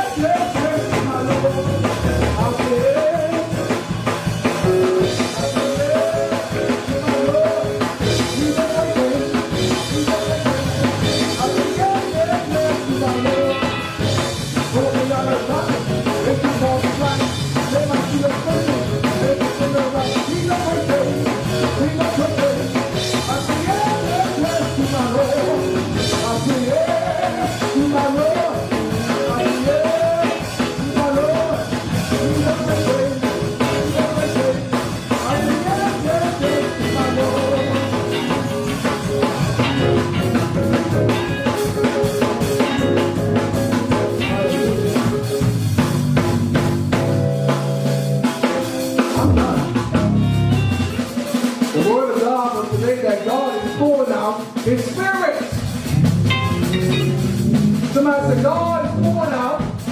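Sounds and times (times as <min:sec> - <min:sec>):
drum kit playing: 0:00.0 - 0:59.9
people singing: 0:17.9 - 0:39.6.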